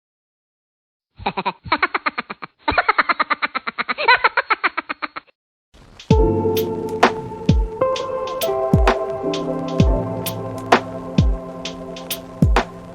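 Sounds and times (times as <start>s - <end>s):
music: 6.1s - 12.9s.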